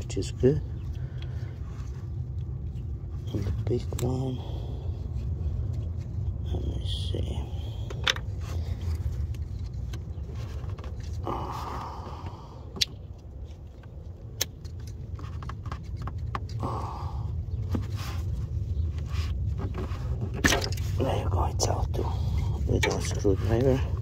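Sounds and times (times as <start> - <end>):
low hum: 0.0 - 24.0
scraping rustles: 8.2 - 11.8, 17.4 - 24.0.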